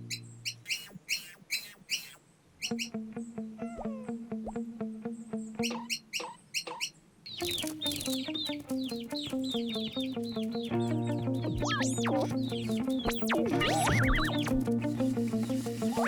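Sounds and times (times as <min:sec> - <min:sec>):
cartoon bird chirps: 0:00.1 - 0:03.0, 0:05.6 - 0:07.6
light background music: 0:07.4 - 0:16.0.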